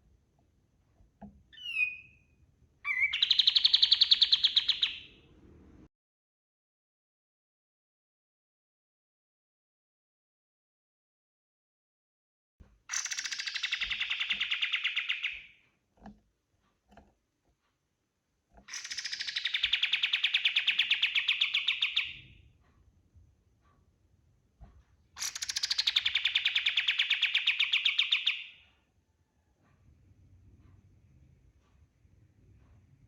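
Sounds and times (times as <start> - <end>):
songbird singing rapid trills: 2.9 - 5.1, 12.9 - 15.5, 18.7 - 22.3.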